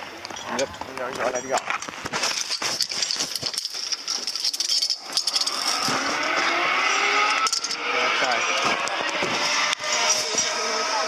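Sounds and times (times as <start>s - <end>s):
pulleys rattling on cable: 1.4s - 6.6s, 7.2s - 9.2s
pulley whine rising in pitch: 5.1s - 11.0s.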